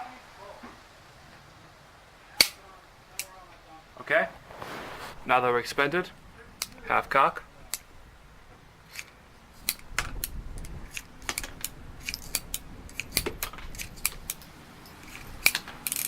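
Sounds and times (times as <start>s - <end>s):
revolver cylinder turning: 8.8s - 16.0s
revolver metallic clicks: 8.9s - 16.0s.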